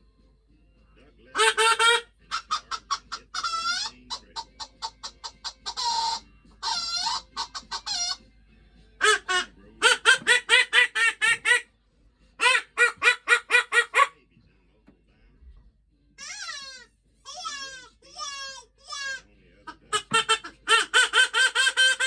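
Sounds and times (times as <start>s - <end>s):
duck quacking: 1.3s - 8.2s, 9.0s - 11.7s, 12.4s - 14.2s, 17.4s - 22.0s.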